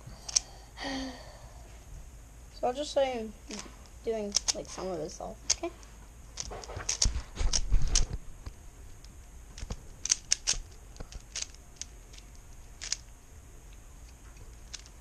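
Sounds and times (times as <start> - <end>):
speed cube clicking: 4.2 - 4.7, 5.4 - 5.8, 6.4 - 8.2, 8.8 - 13.1, 13.7 - 15.0.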